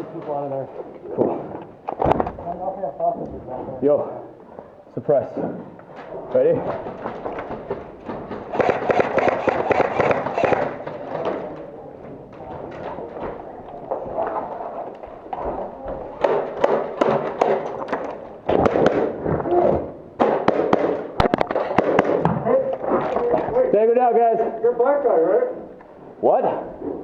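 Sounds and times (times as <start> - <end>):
pellet impacts: 6.7 - 11.4, 16.2 - 23.0
airsoft gunfire: 8.3 - 11.1, 16.2 - 19.4, 20.2 - 22.4.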